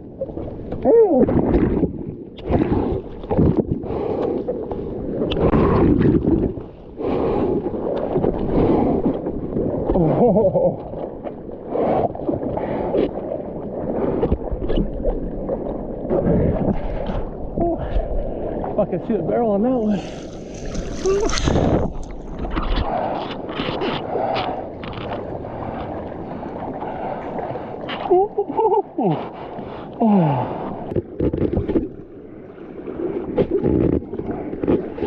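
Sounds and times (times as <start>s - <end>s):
seawater splashing and sloshing: 0.0s - 35.0s
gurgling bubbles: 4.9s - 29.4s
wind on microphone: 5.1s - 10.7s, 15.9s - 18.8s, 19.8s - 28.2s.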